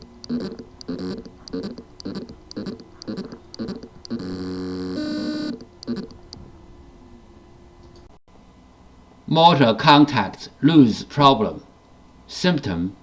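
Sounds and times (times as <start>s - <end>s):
hard drive motor buzzing pulses: 0.0s - 6.4s
hard drive motor hum: 0.0s - 7.1s.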